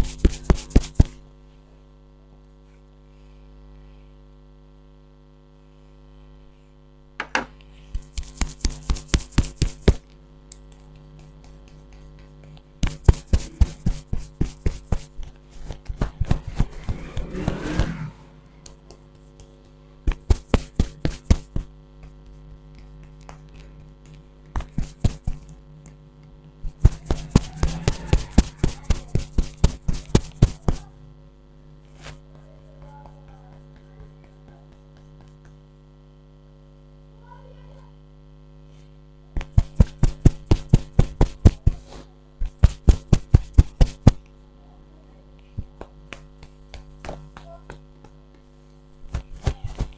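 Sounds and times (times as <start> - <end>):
steady electrical hum: 0.0 - 49.9
hand slaps on head: 24.5 - 25.5, 39.4 - 41.8.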